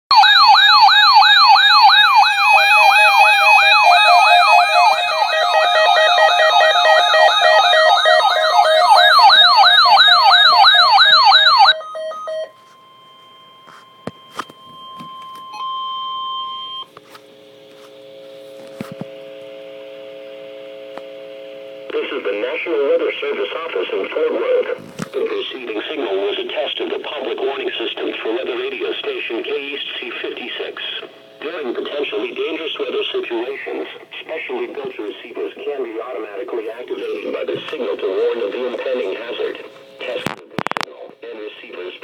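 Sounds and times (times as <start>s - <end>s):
steady alert tones: 0.1s - 12.6s
electronic siren tones wailing: 0.1s - 16.9s.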